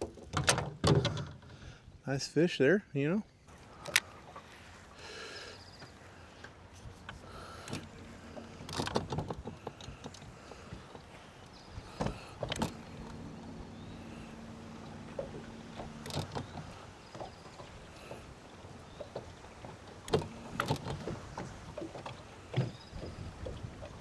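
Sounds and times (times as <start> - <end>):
electric trolling motor humming: 5.0 - 24.0.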